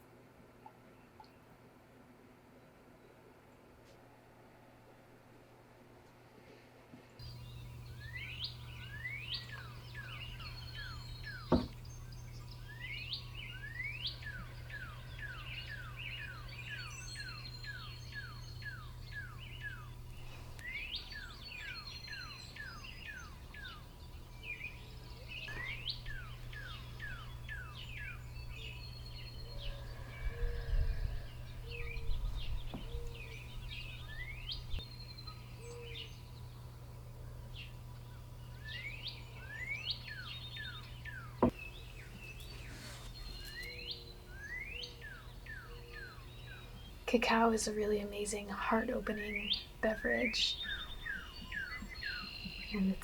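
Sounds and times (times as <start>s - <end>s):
low steady hum: 0.0s - 53.0s
birds chirping: 7.2s - 53.0s.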